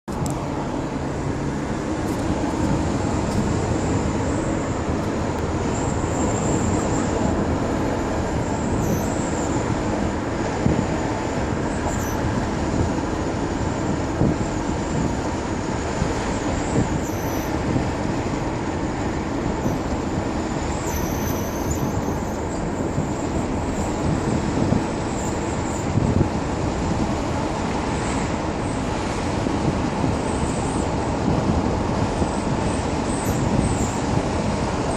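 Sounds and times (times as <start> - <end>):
road and tyre noise: 0.0 - 34.9
faint high-pitched squeal: 8.4 - 9.7, 11.7 - 12.2, 16.6 - 17.6, 20.7 - 24.0.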